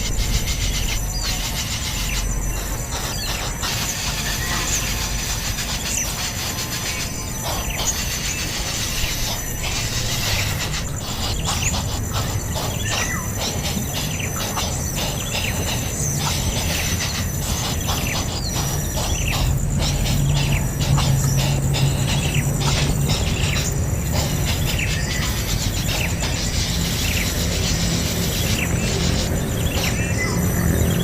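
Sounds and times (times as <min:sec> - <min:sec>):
bird chirps and calls: 0:00.0 - 0:31.0
insects trilling: 0:00.0 - 0:31.0.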